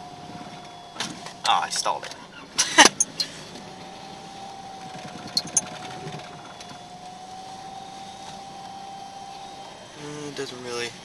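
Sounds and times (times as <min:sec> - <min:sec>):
car engine restarting unevenly: 0:00.0 - 0:11.0
sharp clicks: 0:05.4 - 0:05.7.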